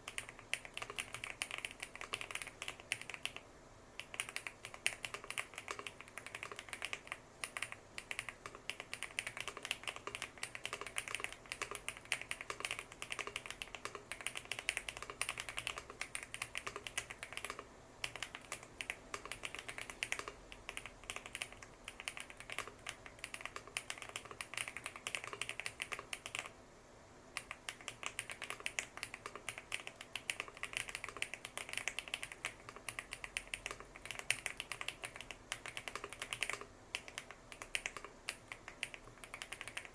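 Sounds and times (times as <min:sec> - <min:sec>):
fast mechanical keyboard typing: 0:00.0 - 0:26.6, 0:27.4 - 0:39.9.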